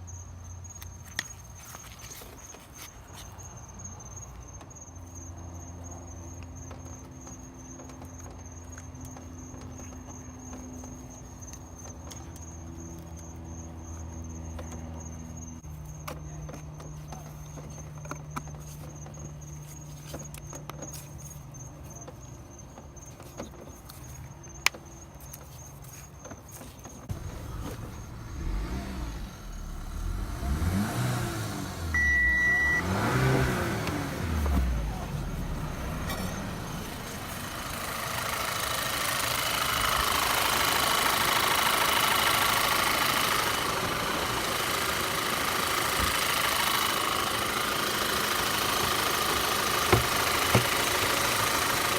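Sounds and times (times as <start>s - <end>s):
car engine revving: 27.1s - 51.9s.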